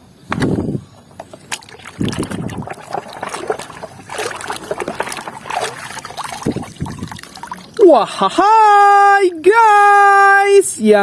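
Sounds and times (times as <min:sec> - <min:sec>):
water splashing and trickling: 0:01.2 - 0:08.1.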